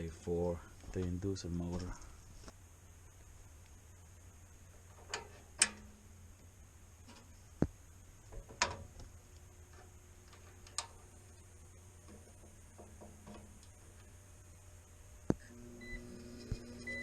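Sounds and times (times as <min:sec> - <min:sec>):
low hum: 0:00.0 - 0:17.0
sharp clicks and knocks: 0:04.8 - 0:05.9, 0:07.0 - 0:11.4, 0:12.0 - 0:14.1.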